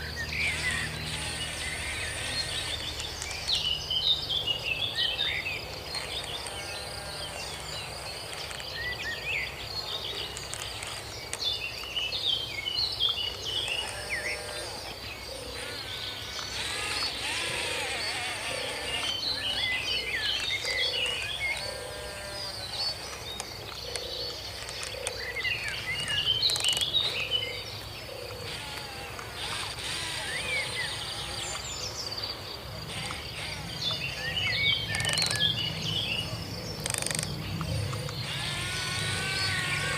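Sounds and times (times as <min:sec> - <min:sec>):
bird chirps: 0:00.0 - 0:39.9.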